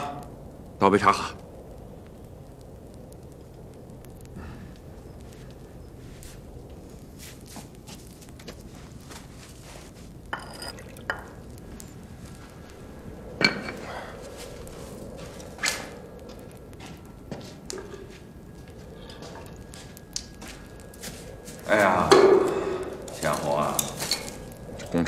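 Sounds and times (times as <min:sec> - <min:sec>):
teacups clinking: 0:10.3 - 0:11.4
tea being poured: 0:10.3 - 0:11.9.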